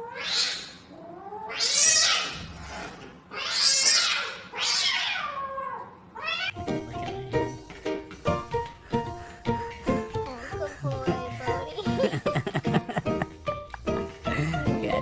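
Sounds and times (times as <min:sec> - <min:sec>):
cat calling harshly: 0:00.0 - 0:02.5, 0:03.3 - 0:06.6
plucked-string music: 0:06.6 - 0:15.0.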